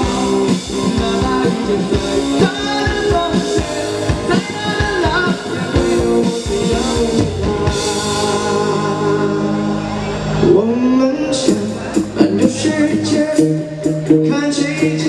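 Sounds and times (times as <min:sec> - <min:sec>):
drum beat: 0:00.0 - 0:09.0
bass: 0:00.0 - 0:15.0
electric guitar lines: 0:00.0 - 0:15.0.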